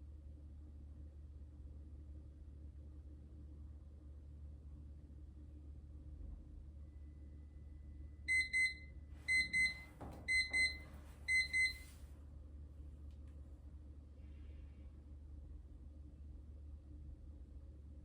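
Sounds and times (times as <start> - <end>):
timer alarm beeping: 8.3 - 11.8.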